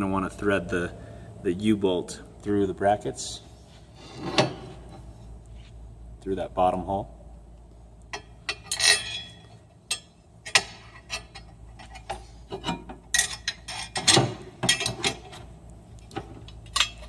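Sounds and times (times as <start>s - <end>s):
metal brackets clinking and knocking: 8.2s - 15.4s, 16.5s - 17.0s.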